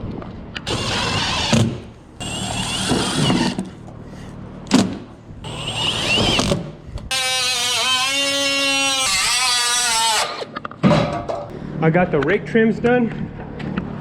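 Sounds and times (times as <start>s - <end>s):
power drill driving screws into metal: 0.7s - 3.6s, 5.5s - 10.4s.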